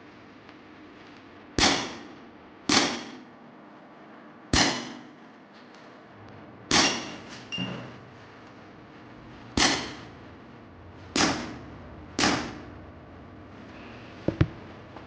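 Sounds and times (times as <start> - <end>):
airgun shots: 2.7 - 3.2, 4.5 - 5.1, 11.2 - 11.6, 12.2 - 12.6.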